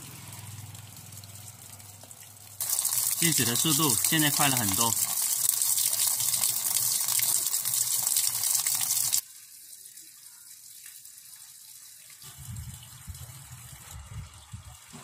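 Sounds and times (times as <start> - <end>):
water gushing into washing machine: 0.0 - 15.0.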